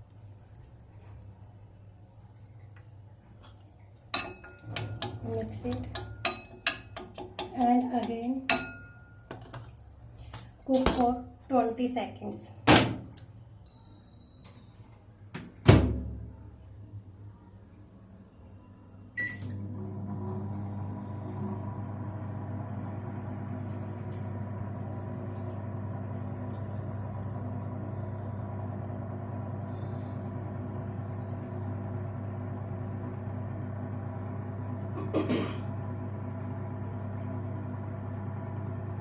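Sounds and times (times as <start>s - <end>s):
microwave oven humming: 4.2s - 7.0s, 19.2s - 39.0s.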